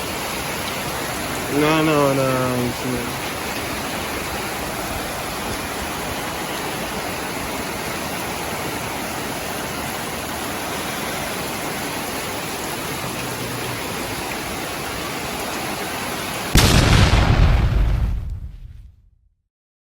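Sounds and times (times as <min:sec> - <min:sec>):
heavy rain falling: 0:00.0 - 0:18.5
loud boom: 0:16.6 - 0:19.2.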